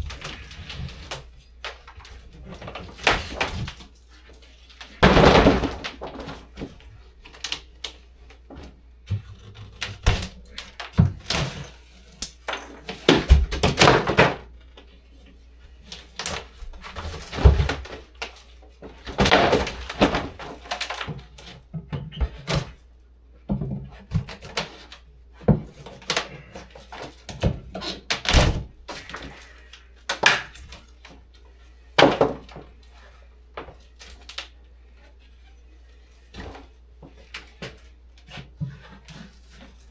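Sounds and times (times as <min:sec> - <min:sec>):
knocks thuds and cracks: 0:04.9 - 0:06.7, 0:12.4 - 0:14.4
wall pieces crashing down: 0:04.9 - 0:06.7, 0:10.9 - 0:14.5, 0:19.0 - 0:21.2.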